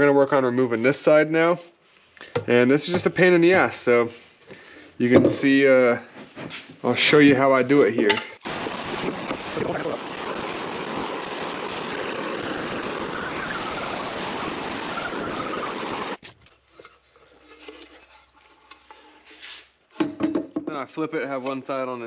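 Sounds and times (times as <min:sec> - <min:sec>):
rushing grinding noise: 0:08.5 - 0:16.2.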